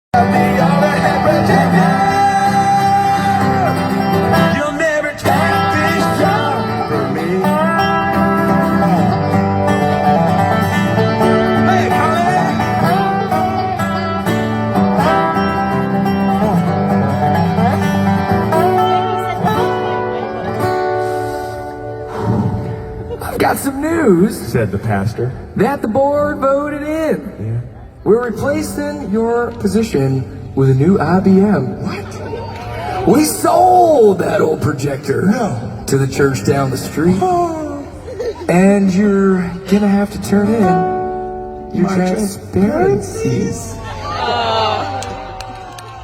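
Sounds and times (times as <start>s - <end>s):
country band instrumental: 0.1s - 44.4s
bass line: 0.2s - 21.0s, 21.8s - 24.4s
plucked guitar: 0.2s - 44.4s.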